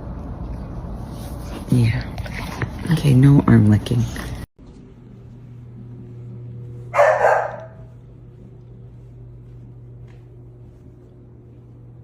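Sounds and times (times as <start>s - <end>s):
dog barking: 6.9s - 7.9s.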